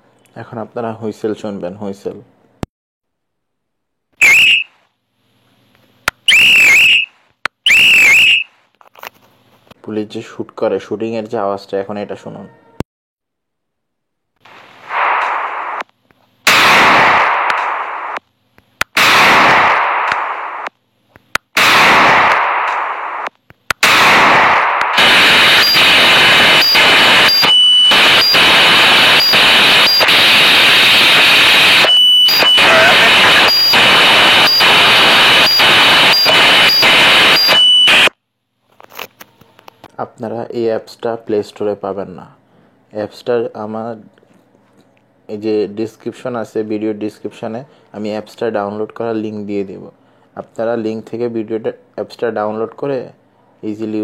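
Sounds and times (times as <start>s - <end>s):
harsh noise with high tone: 4.2s - 4.7s, 6.3s - 7.1s, 14.5s - 15.9s, 16.5s - 18.2s, 19.0s - 20.7s, 21.6s - 38.1s
police whistle blasts: 4.2s - 4.8s, 6.2s - 8.6s, 25.0s - 30.4s, 31.2s - 38.1s
gunshots ringing out: 16.5s - 18.2s, 18.9s - 20.7s, 21.5s - 25.2s.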